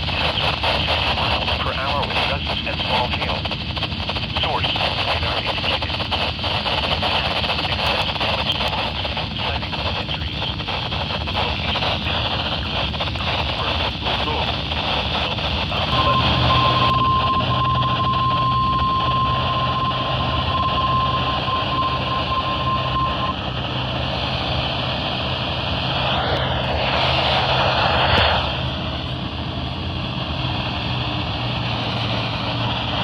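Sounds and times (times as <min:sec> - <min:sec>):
steady alert beep: 0:15.9 - 0:23.4.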